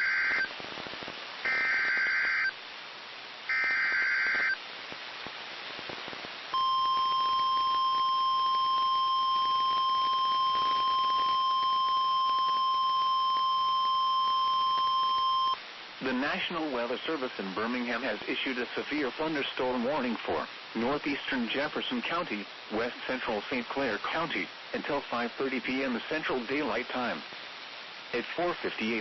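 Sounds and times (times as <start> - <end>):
piercing steady alarm tone: 0.0 - 0.5, 1.5 - 2.5, 3.5 - 4.6, 6.6 - 15.6
warbling digital data tones: 6.6 - 15.6.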